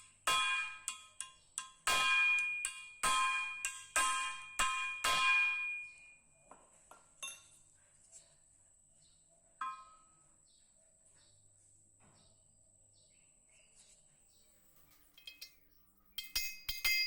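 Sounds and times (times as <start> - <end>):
metal strikes ringing: 0.3 - 6.2, 15.2 - 17.0.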